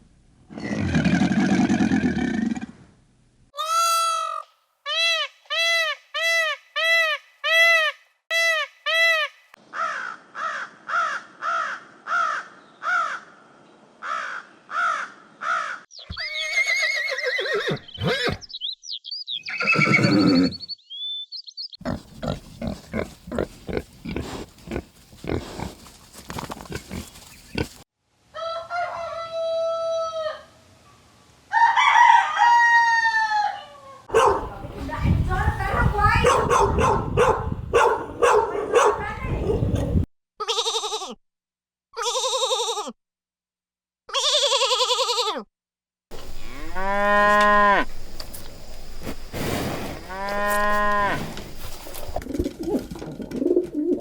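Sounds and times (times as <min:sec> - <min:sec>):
bird chirps: 0:15.9 - 0:16.4, 0:17.7 - 0:21.9
rough animal calls: 0:19.4 - 0:20.7, 0:21.8 - 0:27.8, 0:34.1 - 0:34.7, 0:46.1 - 0:54.0
rooster calls: 0:28.3 - 0:30.6, 0:31.5 - 0:34.6, 0:46.2 - 0:48.1, 0:50.0 - 0:51.6
chicken calls: 0:31.6 - 0:34.7
pitched animal calls: 0:46.1 - 0:48.7, 0:50.0 - 0:52.9.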